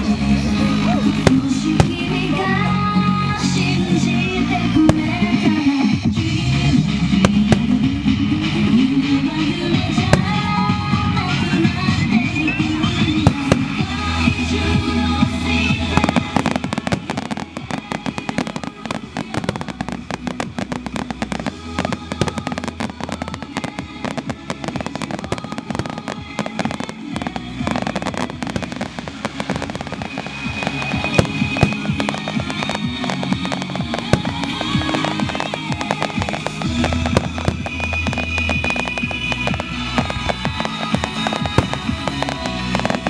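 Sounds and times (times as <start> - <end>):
fireworks bangs and crackling: 0.0 - 43.0
music playing: 0.0 - 43.0.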